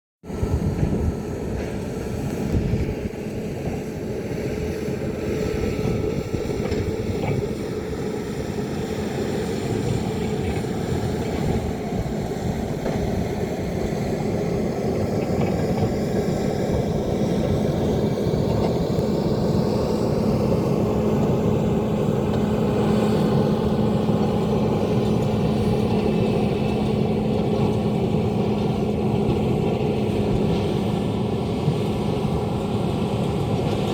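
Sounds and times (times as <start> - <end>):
excavator diesel engine droning: 0.3 - 33.9.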